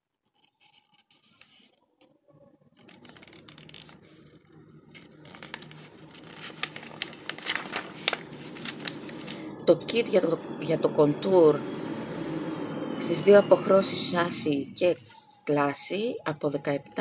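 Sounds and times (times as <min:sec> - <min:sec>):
glossy paper pages turning: 0:00.2 - 0:01.8, 0:02.8 - 0:09.5.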